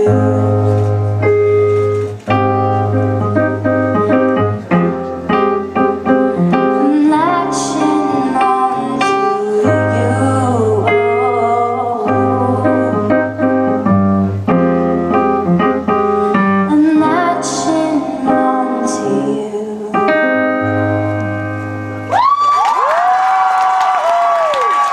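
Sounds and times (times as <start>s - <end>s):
keyboard and piano music: 0.0s - 22.4s
person cheering: 22.1s - 24.9s.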